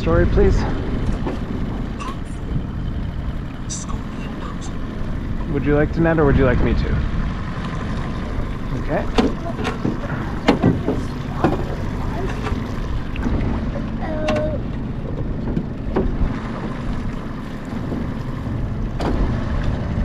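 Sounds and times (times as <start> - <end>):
wind rumbling on microphone: 0.0 - 20.0
sharp knocks on boat: 7.6 - 19.8.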